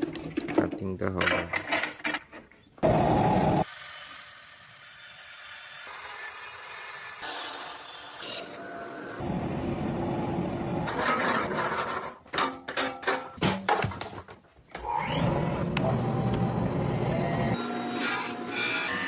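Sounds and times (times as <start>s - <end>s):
tools working wood: 14.8s - 19.0s.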